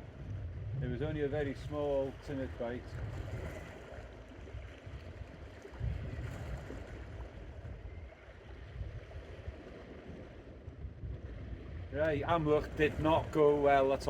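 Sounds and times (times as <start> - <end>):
wind gusting over microphone: 0.0 - 14.0
sea washing against rocks: 11.8 - 14.0.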